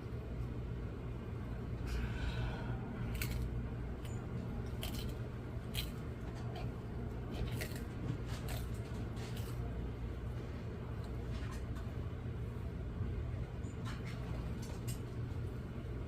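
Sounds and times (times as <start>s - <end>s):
steady low hum: 0.0s - 16.0s
animal crunching food: 2.7s - 12.8s, 13.4s - 15.7s.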